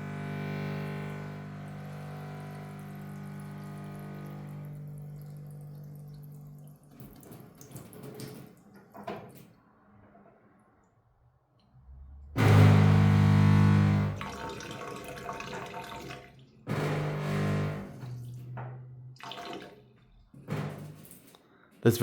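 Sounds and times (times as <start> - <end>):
faucet buzzing hum: 0.0 - 7.4, 12.4 - 20.0
faint clicks and splashes: 2.4 - 9.6.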